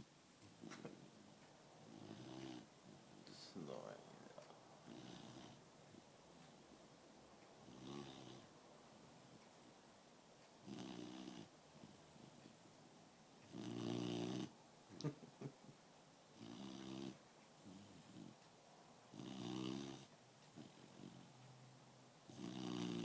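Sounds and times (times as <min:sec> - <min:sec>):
dog snoring: 0:01.8 - 0:06.7, 0:07.6 - 0:08.5, 0:10.6 - 0:12.5, 0:13.4 - 0:14.6, 0:16.3 - 0:18.4, 0:19.1 - 0:21.4, 0:22.3 - 0:23.0.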